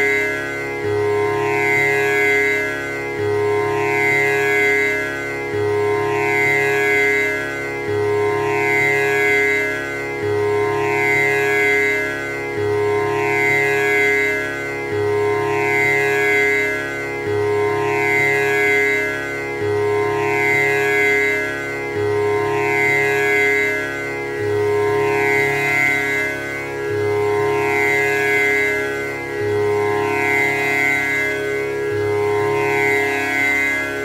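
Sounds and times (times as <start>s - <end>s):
tanpura drone: 0.0s - 34.0s.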